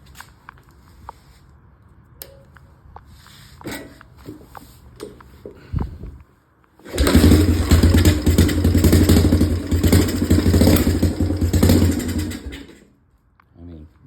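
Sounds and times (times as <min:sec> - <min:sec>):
motorcycle engine starting and running: 0:06.8 - 0:12.9.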